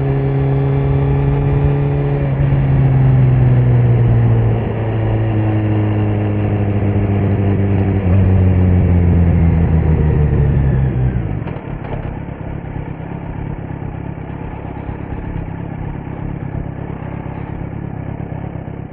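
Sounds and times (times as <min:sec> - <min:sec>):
motorcycle engine decelerating: 0:00.0 - 0:18.9
motorcycle engine idling: 0:08.1 - 0:18.9.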